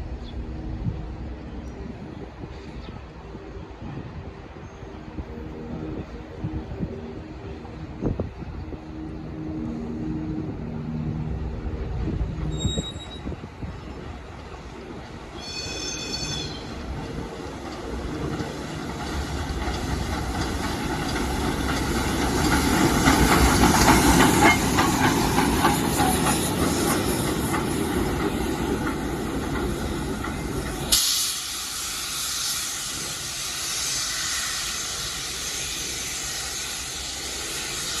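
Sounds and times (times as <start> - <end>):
locomotive engine and wheels rumbling: 0.0 - 38.0
steam hissing: 16.7 - 38.0.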